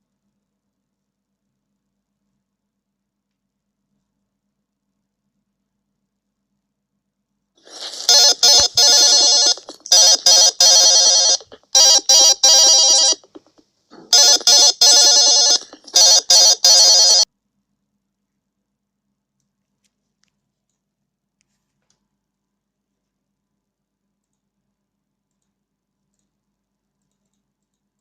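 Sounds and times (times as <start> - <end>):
trilling electronic alarm ring: 7.8 - 13.3, 14.1 - 17.3.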